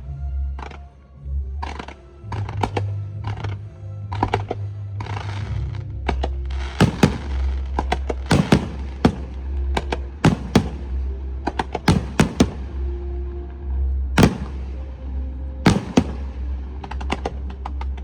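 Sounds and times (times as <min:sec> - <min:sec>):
background music with low bass: 0:00.0 - 0:18.0
fireworks bangs: 0:06.6 - 0:13.1, 0:14.2 - 0:17.3.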